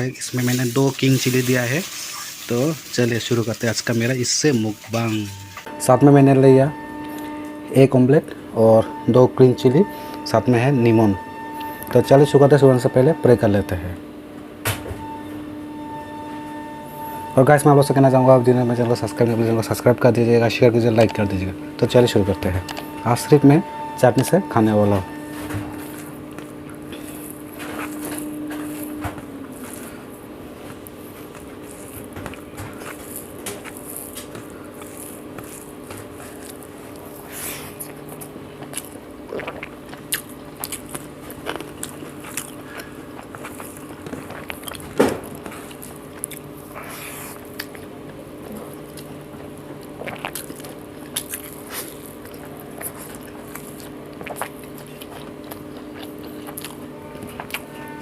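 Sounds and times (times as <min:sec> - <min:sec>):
faint steady hum: 0:01.0 - 0:58.0
chewing with wet smacks: 0:37.8 - 0:57.8.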